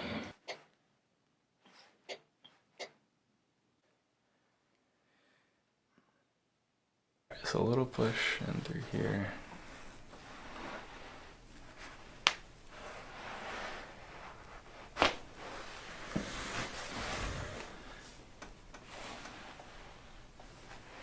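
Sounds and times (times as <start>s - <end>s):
hands rubbing clothing: 8.9s - 21.0s.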